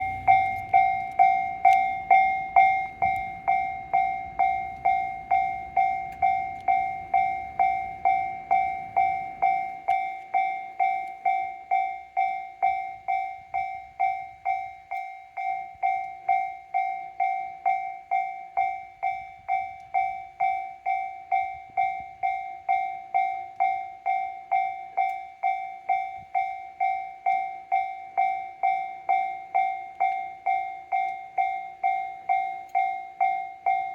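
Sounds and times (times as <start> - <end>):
electric train rumbling: 0.0 - 10.0
level crossing bell clanging: 0.0 - 27.2.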